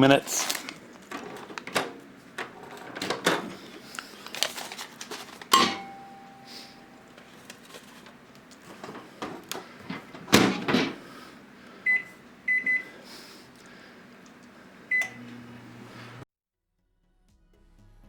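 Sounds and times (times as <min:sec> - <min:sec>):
microwave oven humming: 0:00.0 - 0:16.2
microwave handling clicks: 0:05.4 - 0:06.4
microwave door thud: 0:05.5 - 0:06.4, 0:09.3 - 0:11.0
keypad beeps: 0:11.9 - 0:12.9, 0:14.9 - 0:15.2.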